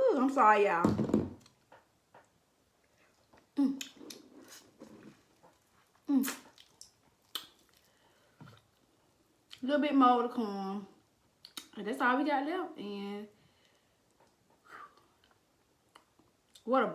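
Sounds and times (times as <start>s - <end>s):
wet chewing and lip-smacking: 2.2s - 9.6s, 11.4s - 11.8s, 14.1s - 16.7s.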